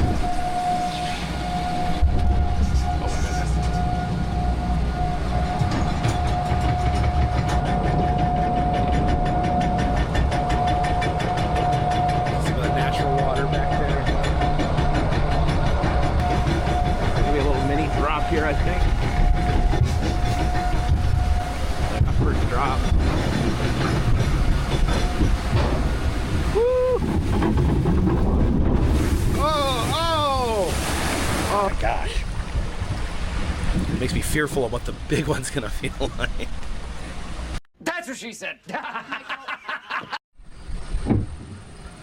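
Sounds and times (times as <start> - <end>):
steady machine whine: 0.0 - 28.2
low rumble: 0.0 - 37.6
conveyor lift clacking: 1.4 - 30.6
rider shouting woo: 26.5 - 27.0, 29.4 - 30.7.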